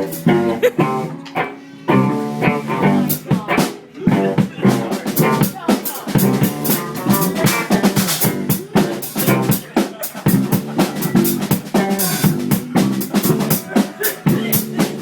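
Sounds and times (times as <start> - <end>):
electric guitar: 0.0 - 5.5
drum kit beat: 0.0 - 15.0.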